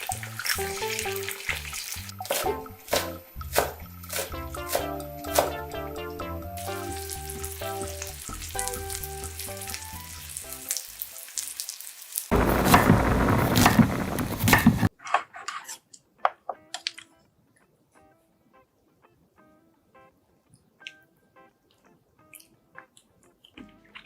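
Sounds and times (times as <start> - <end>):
food sizzling in a pan: 0.0 - 3.2, 6.6 - 14.9
background music: 0.0 - 11.0.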